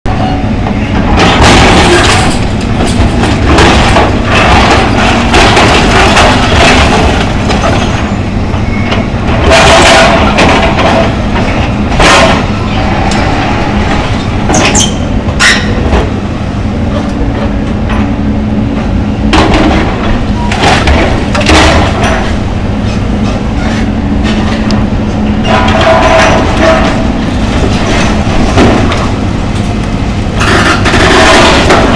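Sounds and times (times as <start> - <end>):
excavator engine rumble: 0.1 - 31.9
falling debris crashing: 1.0 - 8.1, 9.3 - 13.1, 19.3 - 22.4, 25.5 - 29.2, 30.3 - 31.9.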